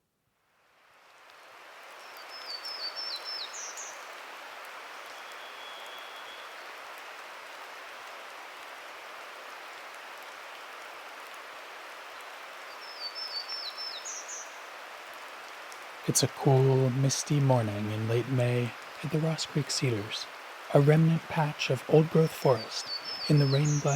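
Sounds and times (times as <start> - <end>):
warbler buzzy song: 2.0 - 4.1, 5.2 - 6.5, 12.7 - 14.6, 16.5 - 23.9
water noise: 15.3 - 23.9.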